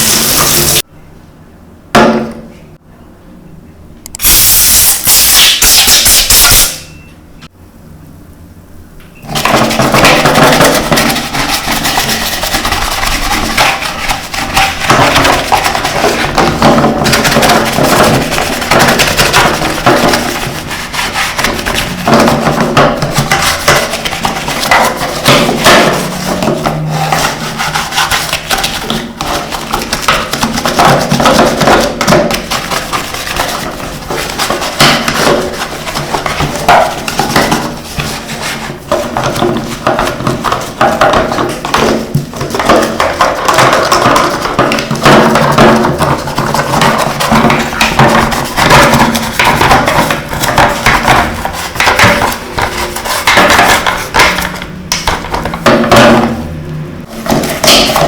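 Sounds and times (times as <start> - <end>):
spray hissing: 0.0 - 0.8
scrubbing with small knocks: 9.3 - 56.4, 57.0 - 58.0.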